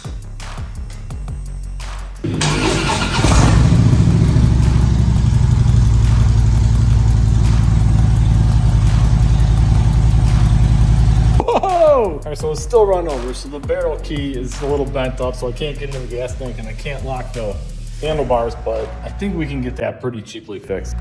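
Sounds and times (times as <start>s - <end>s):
motorcycle engine starting and idling: 2.2s - 11.5s.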